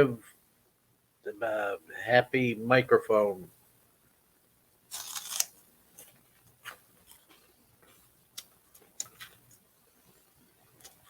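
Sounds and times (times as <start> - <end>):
crisp chewing crunches: 4.9 - 5.6
crunching bite into snack: 4.9 - 5.6.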